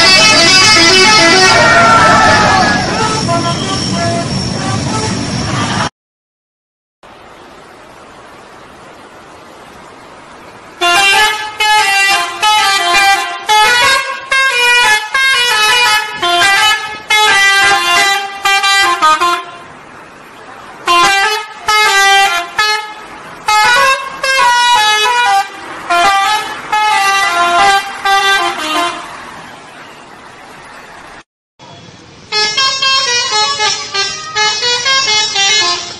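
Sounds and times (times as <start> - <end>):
multi-trumpet bus horn tune: 0.0 - 5.9, 10.8 - 19.9, 20.8 - 30.1, 32.2 - 35.9.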